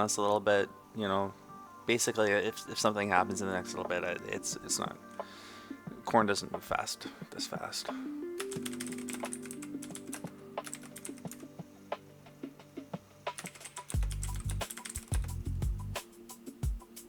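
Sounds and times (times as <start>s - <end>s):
background music: 0.0s - 17.0s
computer keyboard typing: 8.4s - 11.5s, 13.3s - 15.4s.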